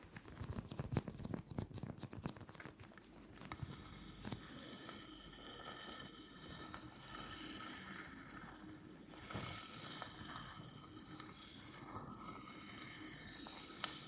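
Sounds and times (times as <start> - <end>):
scratching on a surface: 0.0 - 4.4.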